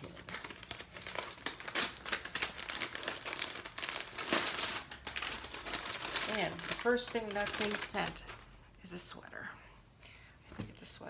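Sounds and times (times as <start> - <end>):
packaging crinkling and rustling: 0.0 - 8.5.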